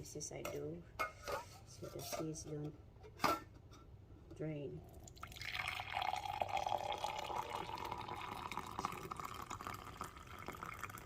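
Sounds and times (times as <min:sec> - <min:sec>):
liquid pouring into container: 0:04.9 - 0:11.0.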